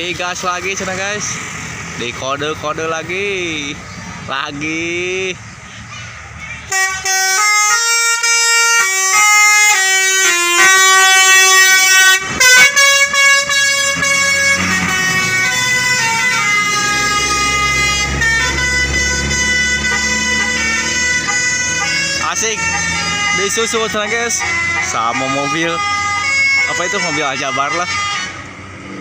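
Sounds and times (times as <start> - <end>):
bus engine running: 0.0 - 29.0
multi-tone bus horn tune: 6.7 - 28.7.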